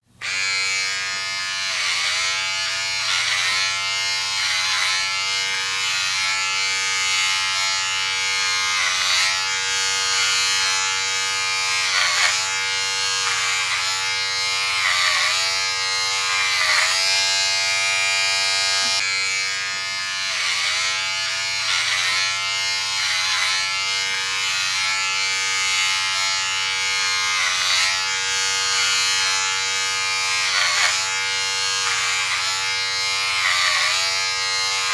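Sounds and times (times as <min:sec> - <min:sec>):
electric hair clipper buzzing: 0:00.2 - 0:34.9.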